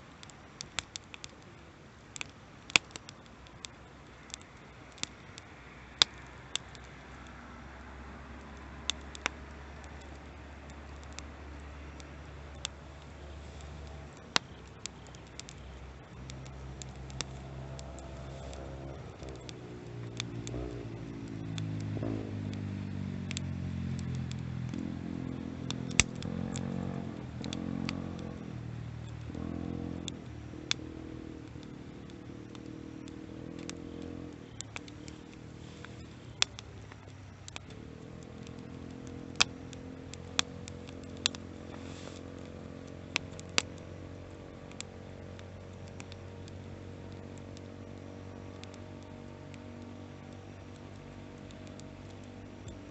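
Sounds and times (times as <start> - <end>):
wood fire crackling: 0.0 - 52.9
vehicle engine passing: 5.6 - 52.5.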